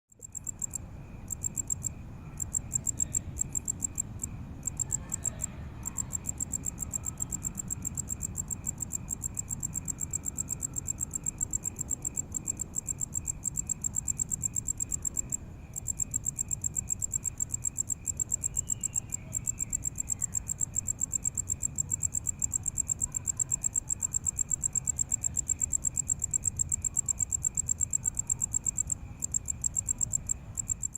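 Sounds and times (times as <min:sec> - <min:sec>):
crickets chirping: 0:00.1 - 0:30.9.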